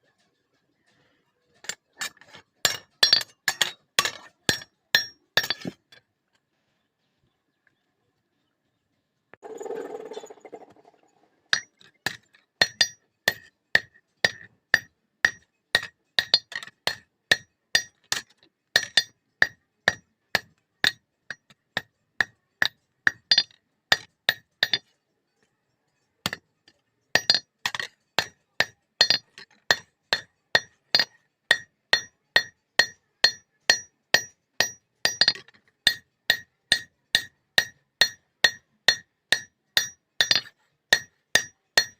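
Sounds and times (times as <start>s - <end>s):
hammer striking steel on anvil: 1.6s - 5.8s, 11.5s - 24.8s, 27.2s - 41.9s.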